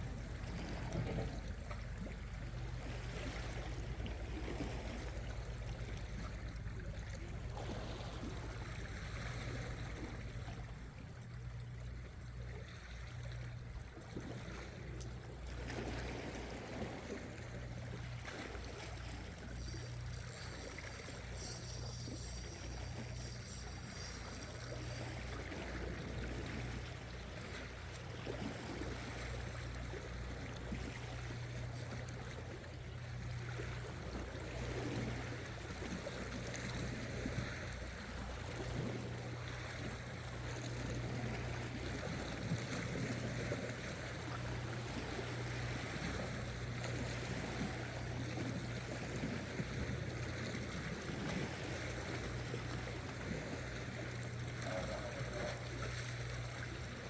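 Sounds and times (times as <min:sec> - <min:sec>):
steady low hum: 0:00.0 - 0:38.0
high-pitched pulsing tone: 0:19.5 - 0:25.4.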